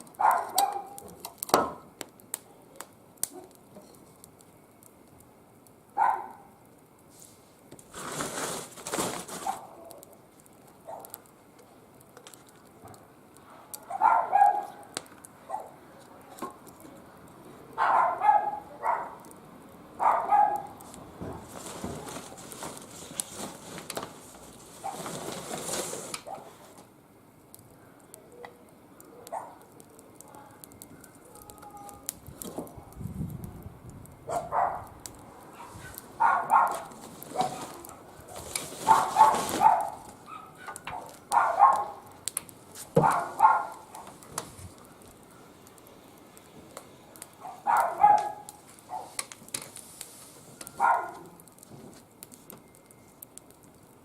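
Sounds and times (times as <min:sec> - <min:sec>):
hissing rustling noise: 0:07.0 - 0:10.4, 0:20.7 - 0:26.9, 0:35.2 - 0:46.7, 0:47.3 - 0:53.2.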